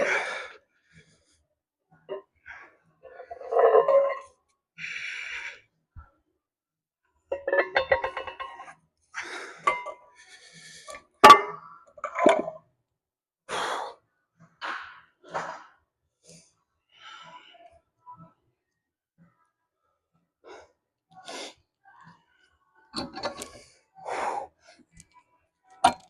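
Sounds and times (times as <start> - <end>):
metal weight plates clinking: 7.3 - 8.7.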